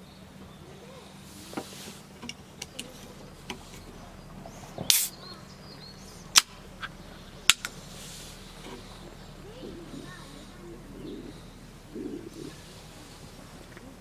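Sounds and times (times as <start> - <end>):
sharp crack: 1.4 - 9.4
sharp clicks and knocks: 6.3 - 7.8.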